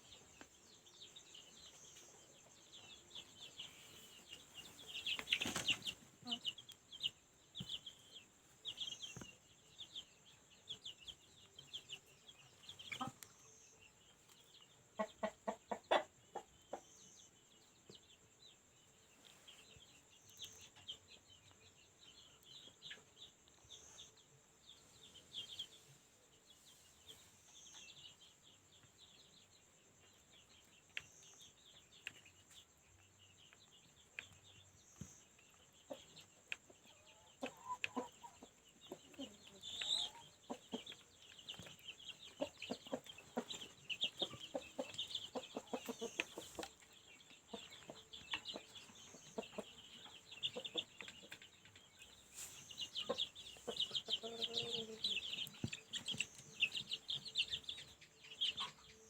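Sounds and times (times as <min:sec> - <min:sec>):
chicks peeping: 0:00.0 - 0:59.0
clucking calls: 0:42.4 - 0:46.7.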